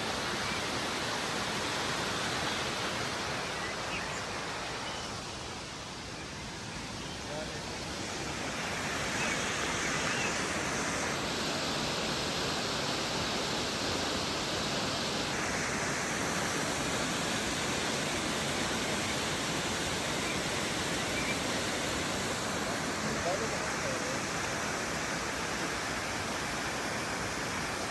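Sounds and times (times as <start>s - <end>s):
waterfall rushing: 0.0s - 27.9s.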